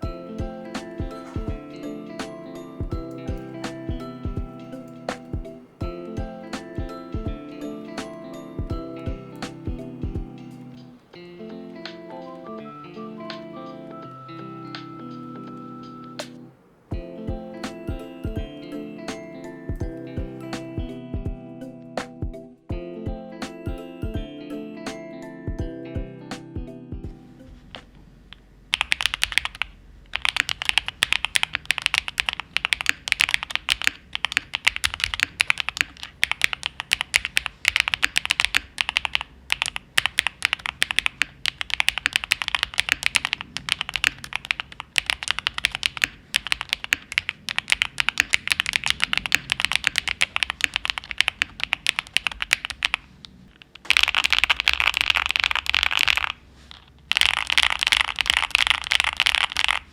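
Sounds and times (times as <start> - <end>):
keyboard keystroke clacks: 0.0 - 12.4, 28.7 - 53.1.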